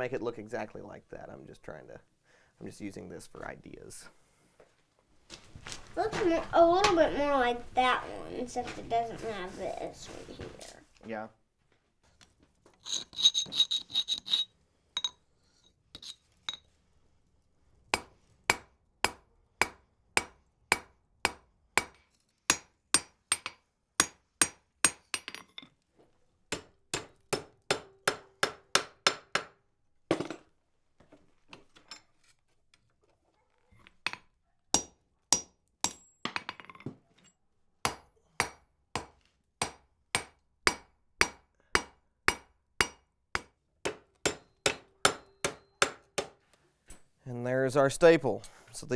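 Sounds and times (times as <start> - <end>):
hammer striking iron on anvil: 18.0 - 25.4, 26.5 - 29.6, 34.8 - 36.1, 37.9 - 46.4.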